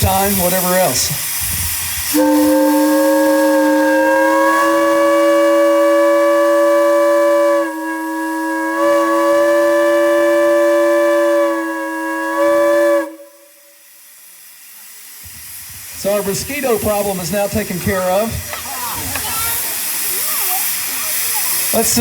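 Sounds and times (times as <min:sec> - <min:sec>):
steam whistle chord: 0:02.1 - 0:13.9.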